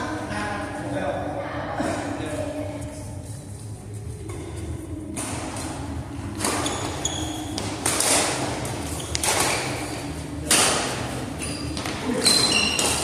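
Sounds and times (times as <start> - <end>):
shoes squeaking on floor: 6.4 - 13.0.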